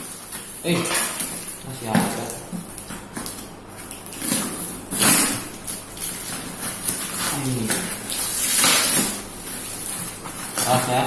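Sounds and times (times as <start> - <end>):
knife cutting cardboard: 4.2 - 10.9.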